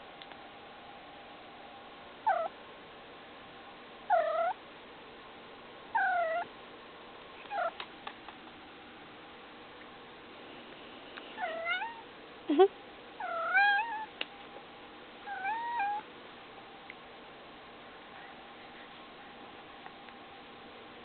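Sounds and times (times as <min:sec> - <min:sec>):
cat meowing: 0:06.0 - 0:06.5, 0:11.4 - 0:12.0, 0:13.2 - 0:14.1, 0:15.3 - 0:16.0.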